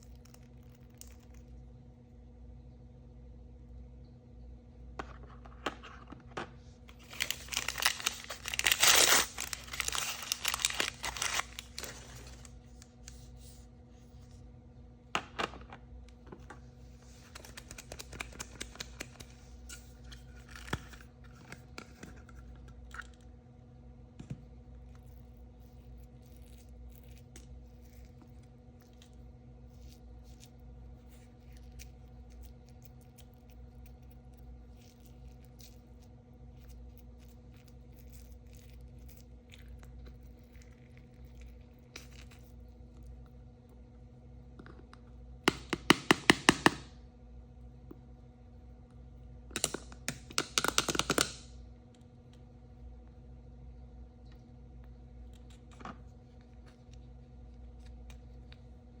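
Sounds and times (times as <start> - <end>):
plastic packaging tearing and crinkling: 6.9 - 12.8.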